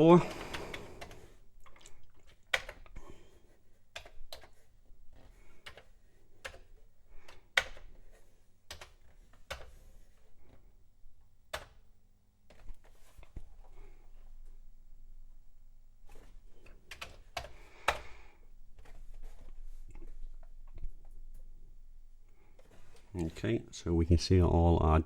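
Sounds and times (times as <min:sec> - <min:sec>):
faint low hum: 0:00.0 - 0:25.0
computer keyboard keys clacking: 0:05.6 - 0:06.7, 0:08.7 - 0:09.8.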